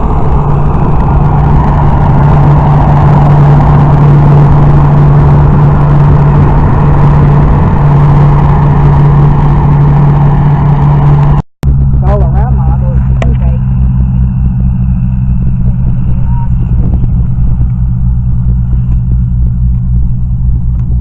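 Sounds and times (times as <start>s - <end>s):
engine drone: 0.0s - 21.0s.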